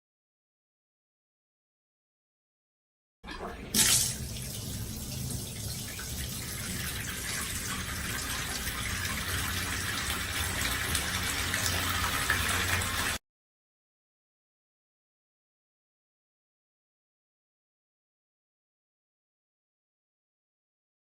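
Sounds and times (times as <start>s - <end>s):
tap water filling a bathtub: 3.3s - 13.2s.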